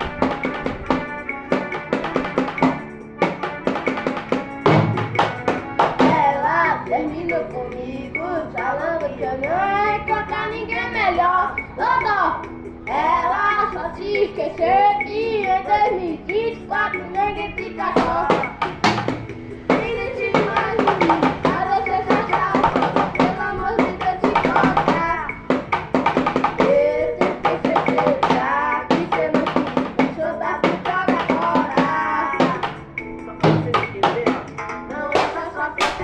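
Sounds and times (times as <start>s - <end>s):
drum kit hits: 0.0s - 6.2s, 18.3s - 36.0s
recorded song with singing: 0.0s - 36.0s.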